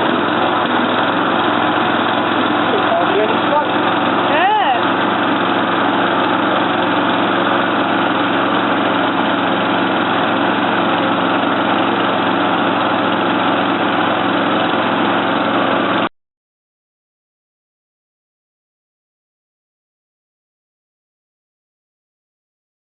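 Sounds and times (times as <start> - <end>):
lawn mower engine running: 0.0 - 16.1.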